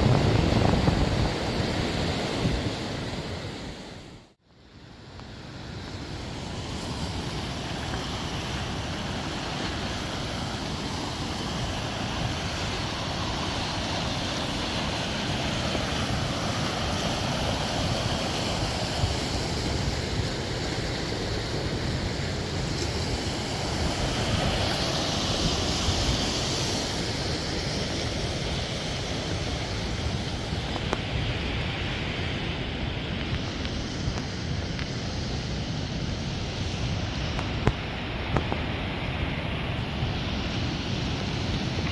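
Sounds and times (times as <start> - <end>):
river rapids rushing: 6.0 - 30.8.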